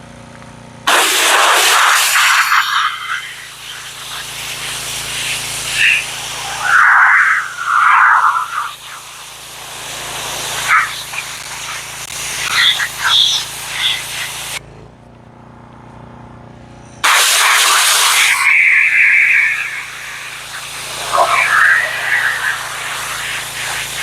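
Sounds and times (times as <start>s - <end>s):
pressure washer spraying: 0.9s - 14.6s, 17.0s - 24.0s
machine low hum: 8.9s - 17.0s.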